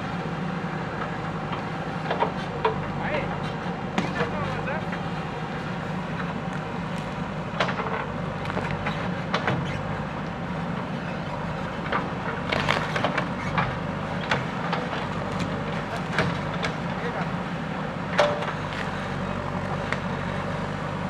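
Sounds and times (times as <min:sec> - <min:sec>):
diesel engine running: 0:00.0 - 0:21.0
brush cracking and knocking: 0:11.9 - 0:17.0.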